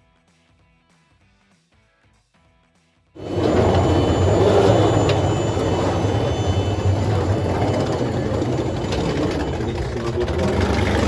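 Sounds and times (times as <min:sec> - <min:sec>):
plane engines droning: 0:03.2 - 0:11.0.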